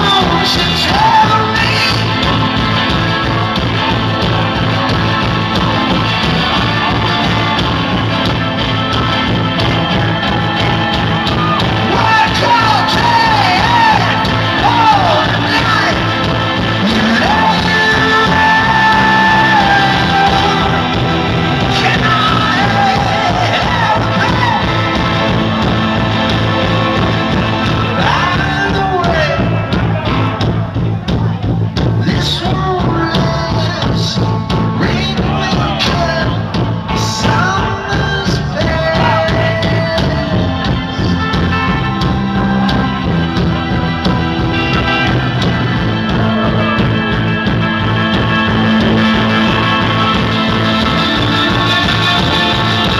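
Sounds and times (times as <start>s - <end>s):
rock band playing: 0.0s - 52.9s
man singing long sliding notes: 16.8s - 25.0s.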